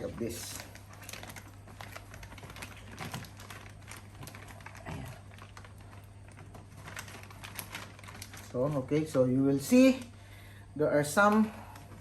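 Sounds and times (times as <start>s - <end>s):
bag clicks and rustles: 0.0s - 9.2s
steady low hum: 0.0s - 12.0s.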